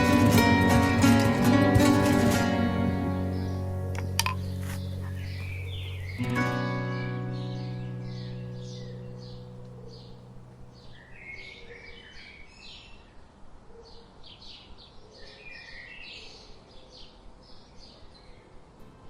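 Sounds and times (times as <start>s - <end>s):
acoustic guitar music: 0.0s - 11.2s
small birds chirping: 3.0s - 18.5s.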